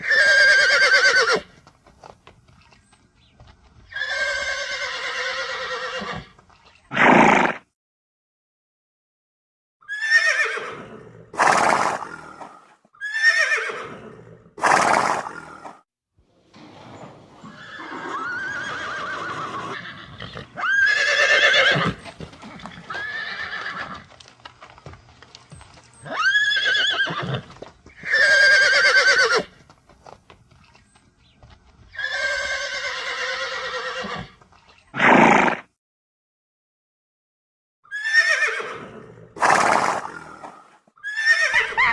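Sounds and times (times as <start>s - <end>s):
horse whinnying: 0.0s - 1.5s, 3.9s - 7.6s, 9.8s - 12.4s, 13.0s - 15.5s, 16.5s - 24.1s, 26.0s - 29.6s, 31.9s - 34.4s, 35.0s - 35.7s, 37.9s - 41.9s.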